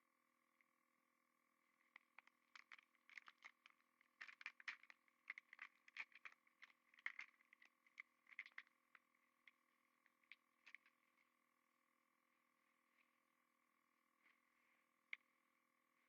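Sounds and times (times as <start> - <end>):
wrapper crinkling: 2.5 - 8.7.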